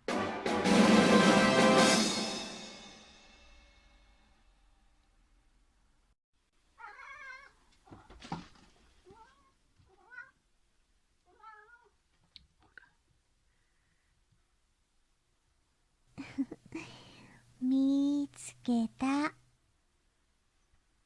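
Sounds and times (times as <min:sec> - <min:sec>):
cat meowing: 0:06.8 - 0:07.6, 0:10.0 - 0:10.4.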